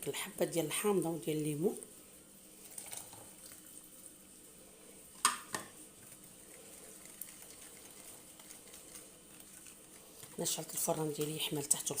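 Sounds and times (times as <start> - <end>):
faint liquid trickle: 2.6 - 5.0.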